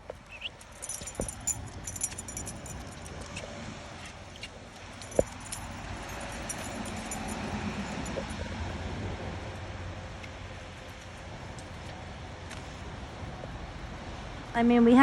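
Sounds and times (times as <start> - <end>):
metal jingling of dog collar: 0.2 - 8.7.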